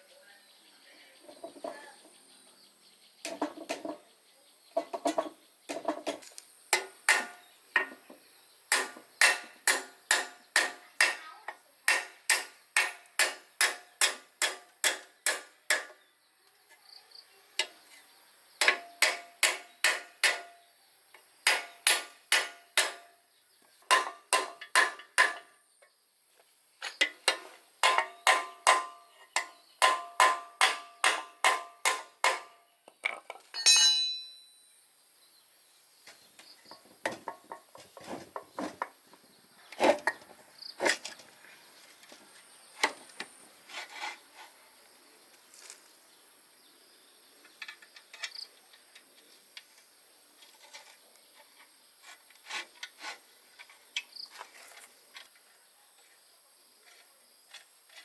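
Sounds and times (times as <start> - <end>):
hammer striking metal: 6.8 - 7.4, 8.7 - 11.2, 11.9 - 15.9, 18.6 - 20.6, 21.5 - 23.1, 23.9 - 25.5, 27.3 - 32.6, 33.6 - 34.5.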